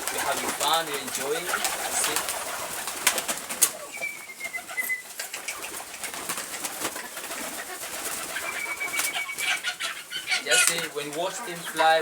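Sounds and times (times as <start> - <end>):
pigeons cooing: 0.0 - 12.0
faint high whistle: 3.8 - 5.1.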